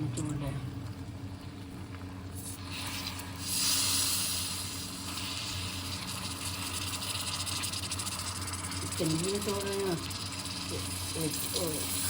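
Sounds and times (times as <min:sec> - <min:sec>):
syrup sizzling in a pan: 0:02.3 - 0:12.0.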